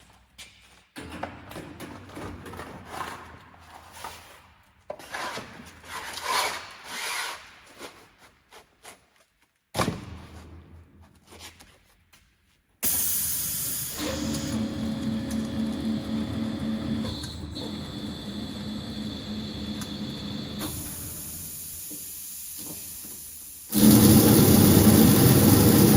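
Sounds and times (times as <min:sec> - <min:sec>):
machine slitting abrasive belt: 0:12.8 - 0:25.9.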